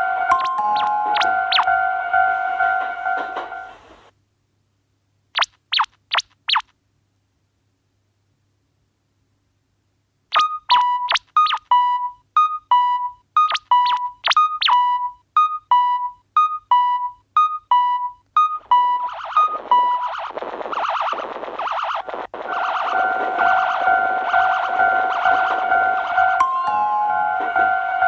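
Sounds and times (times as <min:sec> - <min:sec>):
short electronic blips: 0:00.3 - 0:01.7, 0:05.4 - 0:06.7, 0:10.3 - 0:11.8, 0:13.4 - 0:15.0, 0:18.4 - 0:25.6
buzzy pulsing synthesizer layer: 0:19.0 - 0:26.2.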